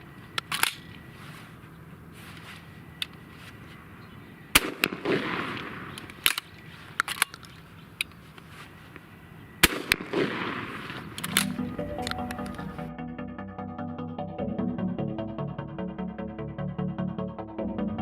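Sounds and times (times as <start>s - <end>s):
sharp clacks of loading mechanism: 0.3s - 1.0s, 6.0s - 8.5s, 11.2s - 12.7s
shotgun firing: 4.5s - 6.5s, 9.6s - 12.7s.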